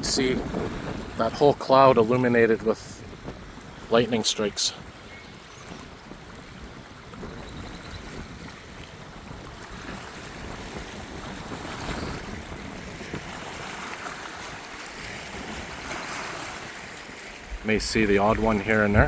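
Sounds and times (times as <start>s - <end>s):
choppy lake water: 0.0s - 19.0s
wind gusting across microphone: 0.0s - 19.0s.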